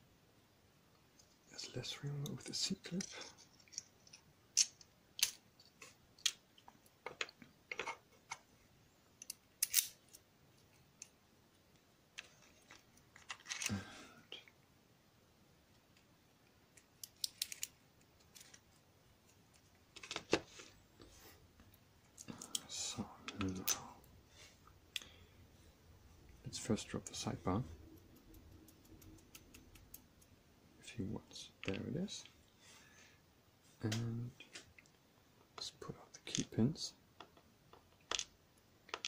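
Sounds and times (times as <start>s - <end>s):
metallic clicks: 27.8s - 30.4s.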